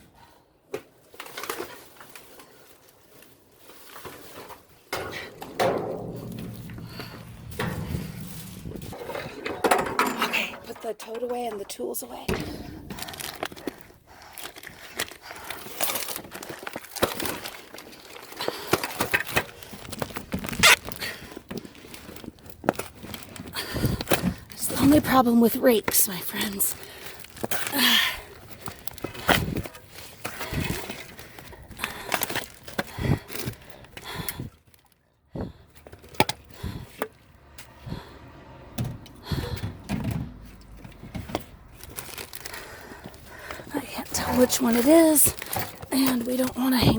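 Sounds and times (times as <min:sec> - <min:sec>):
things being handled and packed: 0:00.6 - 0:46.9
objects knocking and clunking: 0:04.4 - 0:25.2, 0:35.4 - 0:46.9
heavy thuds: 0:05.0 - 0:10.1, 0:12.3 - 0:14.7, 0:38.7 - 0:45.8.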